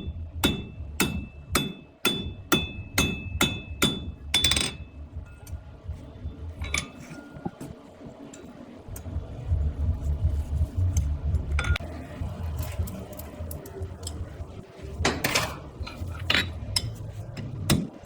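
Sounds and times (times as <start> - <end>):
steady low rumble: 0.0 - 18.0.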